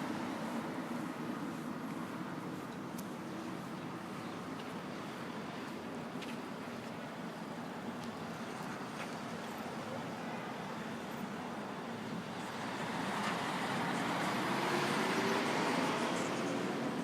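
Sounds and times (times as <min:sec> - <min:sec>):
road traffic noise: 0:00.0 - 0:17.0
vehicle passing close: 0:12.6 - 0:17.0.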